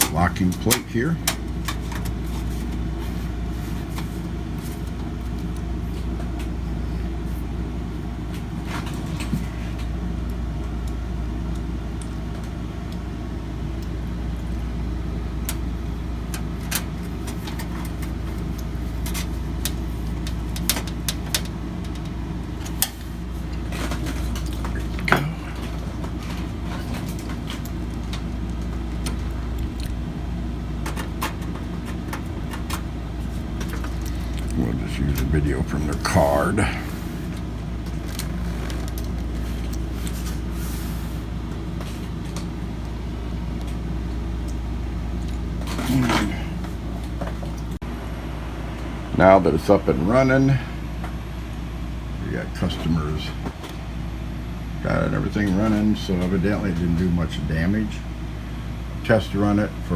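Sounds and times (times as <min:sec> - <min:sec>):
low background hum: 0:00.0 - 0:59.9.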